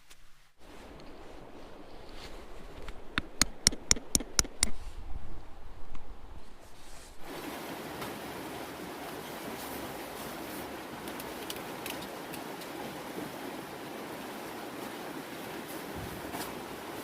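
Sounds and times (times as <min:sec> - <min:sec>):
sharp knocks: 0:03.2 - 0:04.8.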